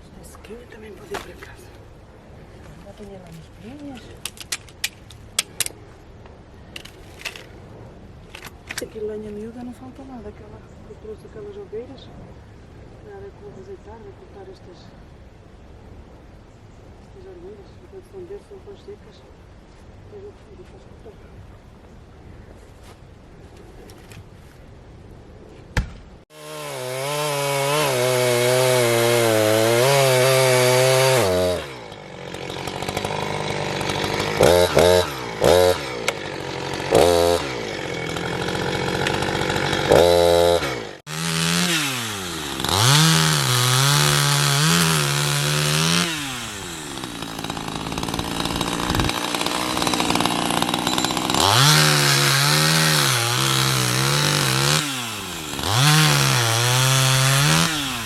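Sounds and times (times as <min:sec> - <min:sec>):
chainsaw revving: 0:26.3 - 0:58.0.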